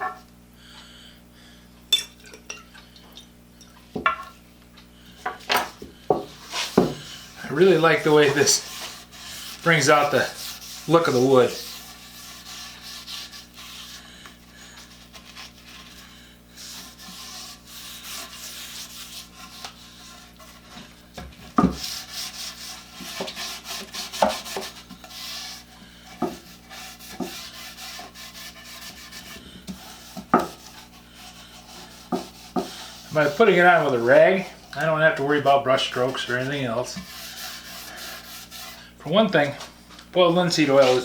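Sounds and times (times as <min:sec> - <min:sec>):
rag scrubbing wood: 0:06.1 - 0:39.5, 0:40.4 - 0:41.0.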